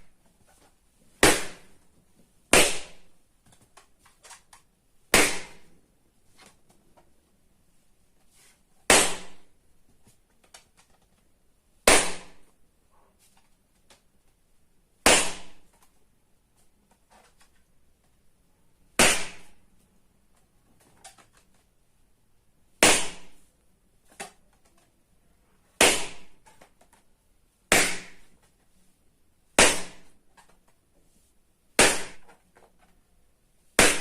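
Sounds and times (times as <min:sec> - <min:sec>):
balloons bursting: 0:01.2 - 0:01.8, 0:02.5 - 0:03.0, 0:05.1 - 0:05.7, 0:25.8 - 0:26.4.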